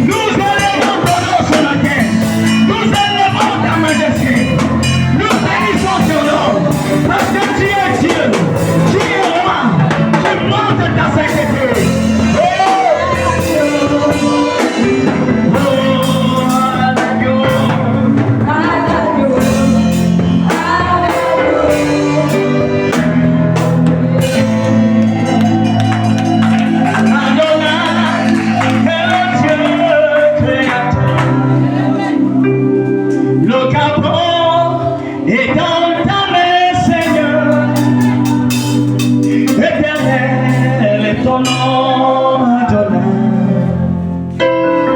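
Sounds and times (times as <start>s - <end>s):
instrumental accompaniment: 0.0s - 44.9s
person singing: 0.0s - 44.9s
percussive beat: 11.3s - 31.4s, 37.0s - 40.8s.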